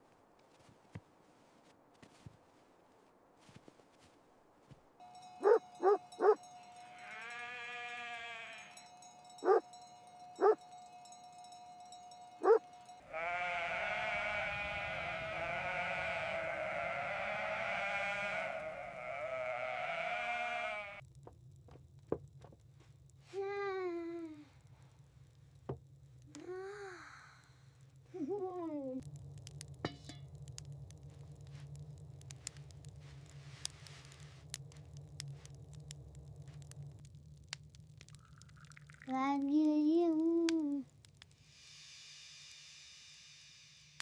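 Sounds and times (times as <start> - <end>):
animal cries: 5.4 - 8.8, 9.4 - 9.7, 10.4 - 10.6, 12.4 - 21.0
wavering bleat-like animal call: 5.4 - 9.6, 12.4 - 21.0.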